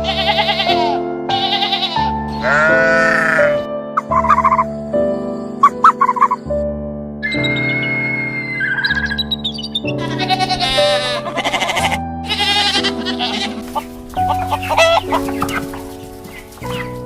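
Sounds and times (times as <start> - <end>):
background music: 0.0 - 17.0
wavering animal calls: 7.2 - 17.0.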